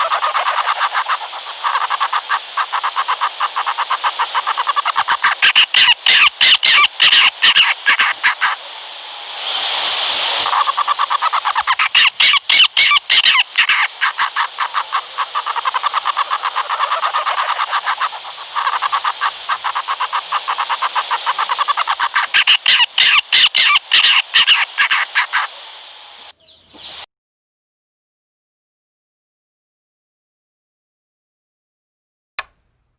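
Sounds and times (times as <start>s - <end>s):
owl pulsing chatter: 0.0s - 8.8s, 10.3s - 27.1s.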